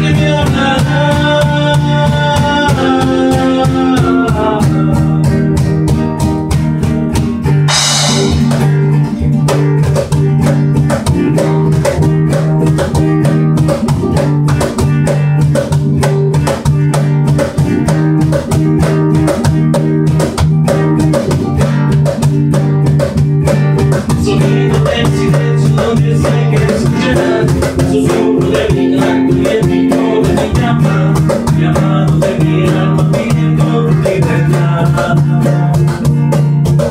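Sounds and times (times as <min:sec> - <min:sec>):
guitar: 0:00.0 - 0:36.9
cymbal crash: 0:07.7 - 0:09.0
bass line: 0:07.7 - 0:09.3
drum kit beat: 0:07.7 - 0:36.9.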